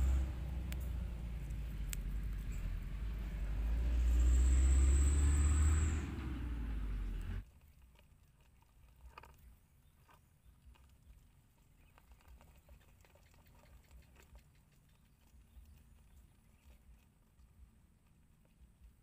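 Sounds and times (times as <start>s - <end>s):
light taps and scratches: 7.4s - 19.0s.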